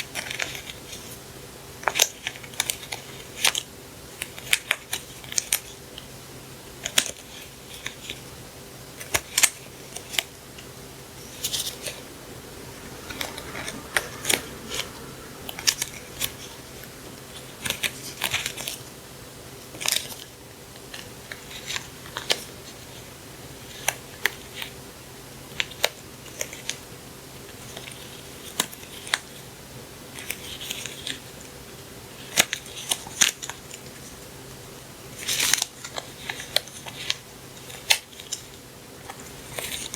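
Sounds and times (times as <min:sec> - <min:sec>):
faint steady hum: 0:00.0 - 0:39.9.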